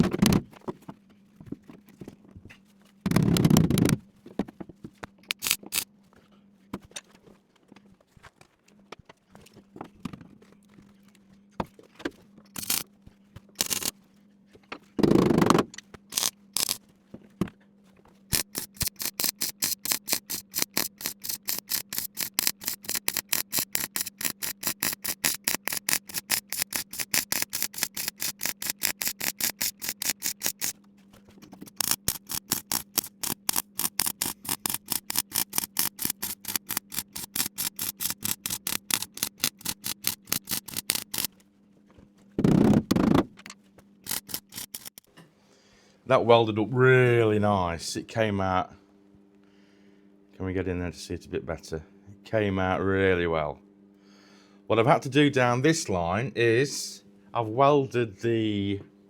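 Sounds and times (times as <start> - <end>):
welder pulsing: 5.3 - 5.8, 12.5 - 12.9, 13.6 - 13.9, 15.0 - 16.8, 18.3 - 30.8, 31.6 - 41.3, 44.0 - 45.1
steady hum: 12.4 - 59.0.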